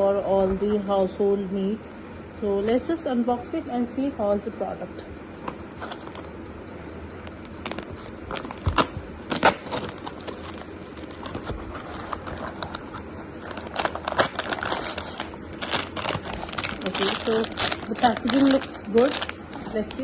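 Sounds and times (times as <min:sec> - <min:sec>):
packaging crinkling and tearing: 0:07.3 - 0:20.0.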